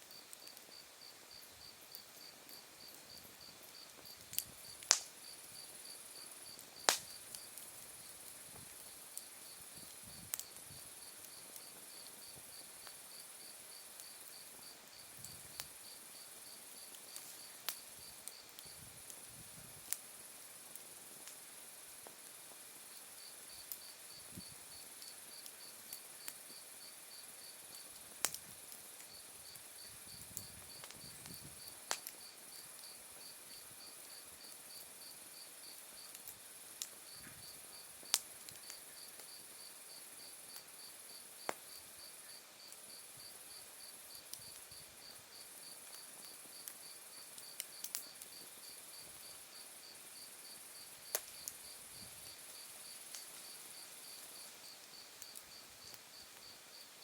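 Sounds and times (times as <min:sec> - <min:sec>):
firewood popping: 0:04.2 - 0:05.1.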